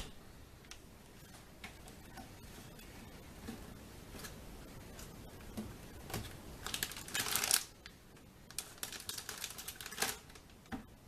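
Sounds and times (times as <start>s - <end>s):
packaging rustling and clicking: 6.2s - 7.7s, 8.5s - 10.6s.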